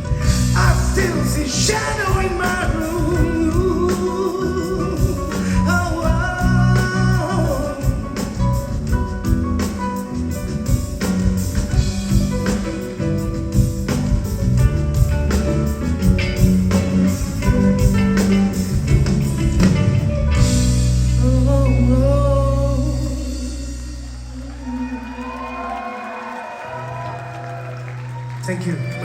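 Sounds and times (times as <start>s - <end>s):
live band playing pop ballad: 0.0s - 29.0s
person singing: 0.2s - 8.5s, 21.1s - 26.0s.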